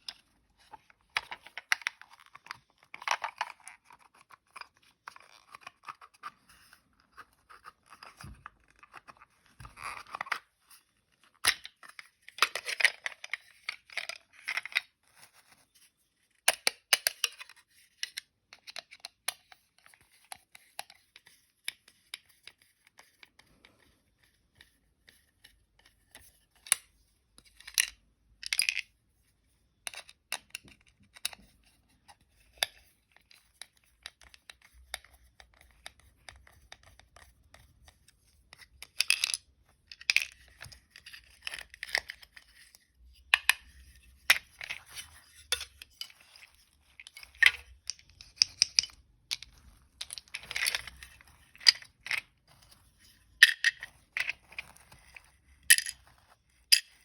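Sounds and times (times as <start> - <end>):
plastic toy parts clicking: 45.5 - 52.3.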